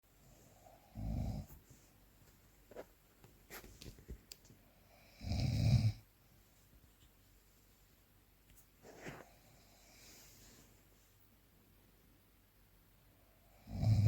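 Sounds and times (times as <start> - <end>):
faint small clicks: 3.2 - 4.6
person snoring: 13.5 - 14.0.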